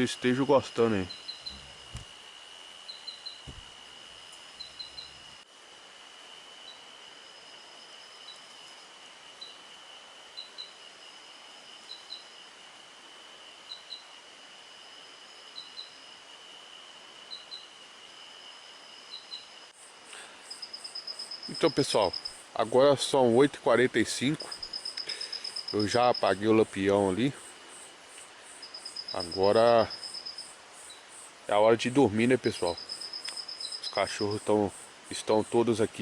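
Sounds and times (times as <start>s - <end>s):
insect drone: 0.0s - 36.0s
short high insect chirps: 0.7s - 5.4s, 10.3s - 12.5s, 13.6s - 14.1s, 15.0s - 16.2s, 17.2s - 22.6s, 24.4s - 26.4s, 27.7s - 31.4s, 32.5s - 34.9s.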